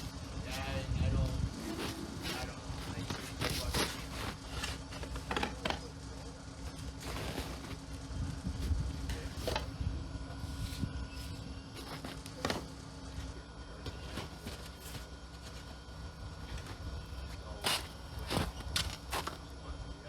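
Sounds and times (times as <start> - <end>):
low steady hum: 0.0 - 20.0
ice scraping: 1.5 - 5.2, 6.9 - 7.8.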